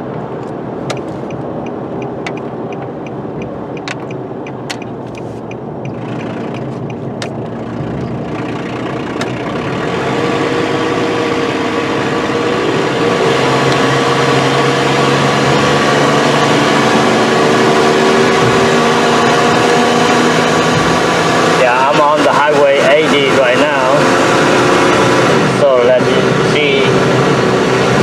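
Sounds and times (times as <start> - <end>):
pickup engine accelerating: 0.0 - 28.0
road noise: 0.0 - 28.0.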